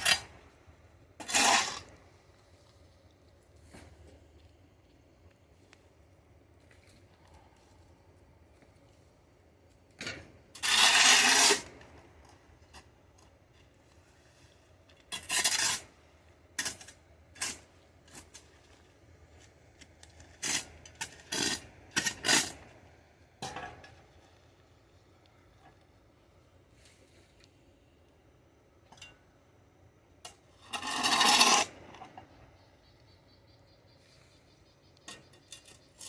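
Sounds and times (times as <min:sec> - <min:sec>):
shovel scraping dirt on concrete: 0:00.0 - 0:00.6, 0:01.2 - 0:03.0, 0:03.6 - 0:04.2, 0:10.0 - 0:13.3, 0:14.1 - 0:16.0, 0:16.6 - 0:18.8, 0:19.4 - 0:22.8, 0:23.4 - 0:24.2, 0:30.2 - 0:32.3, 0:35.0 - 0:36.0.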